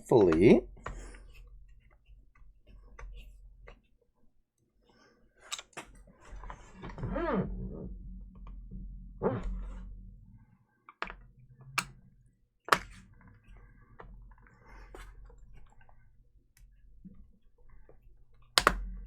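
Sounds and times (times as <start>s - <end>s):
screwdriver clicks and knocks: 12.7s - 13.0s, 18.6s - 19.0s.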